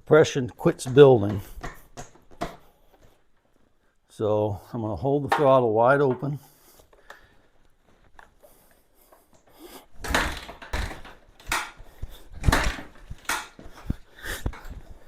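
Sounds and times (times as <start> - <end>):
motorcycle engine kick cranking: 10.0 - 14.0.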